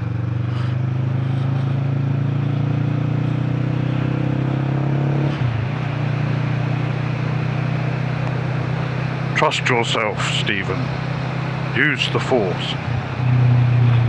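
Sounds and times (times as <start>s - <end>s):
motorcycle engine running: 0.0s - 14.0s
road noise: 0.0s - 14.0s.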